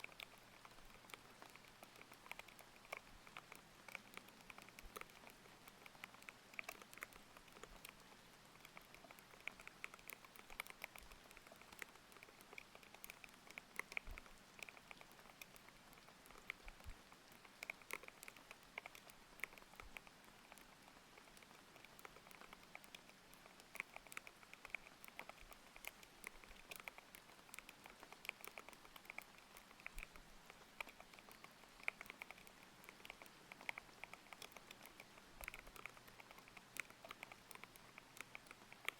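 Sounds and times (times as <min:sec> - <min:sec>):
mechanical keyboard typing: 0:08.6 - 0:38.9.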